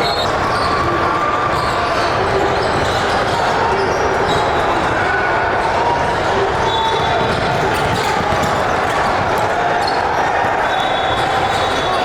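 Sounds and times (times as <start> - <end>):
crowd chatter: 0.0 - 12.0
basketball bouncing on court: 6.7 - 10.6.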